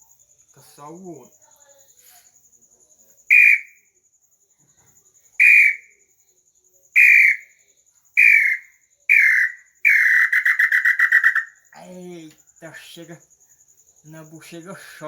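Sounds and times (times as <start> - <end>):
bird-call whistle notes: 3.3 - 3.8, 5.4 - 5.9, 7.0 - 7.5, 8.2 - 11.6
high-pitched chirring: 8.2 - 12.2.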